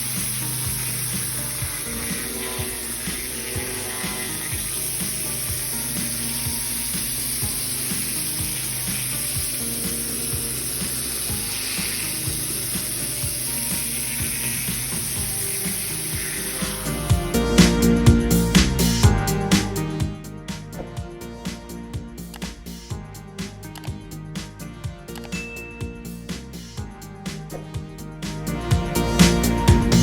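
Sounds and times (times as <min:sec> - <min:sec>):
pressure washer spray hissing: 0:00.0 - 0:17.1
machine humming: 0:00.0 - 0:20.3.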